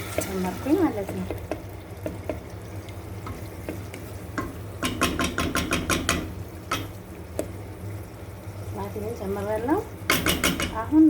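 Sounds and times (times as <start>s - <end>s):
spoon stirring in cooking pot: 0.0s - 7.7s
spoon tapping against pot: 1.0s - 2.5s, 3.2s - 7.5s, 10.1s - 10.8s.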